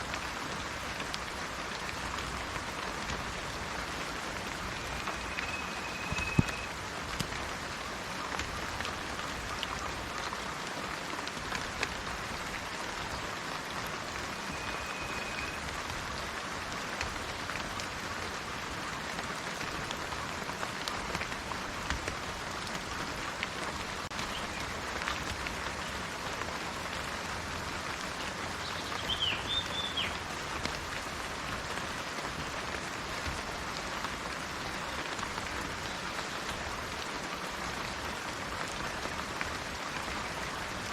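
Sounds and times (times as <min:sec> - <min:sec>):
rain hissing: 0:00.0 - 0:40.9
bird whistling and chirping: 0:04.9 - 0:06.7, 0:28.7 - 0:30.2.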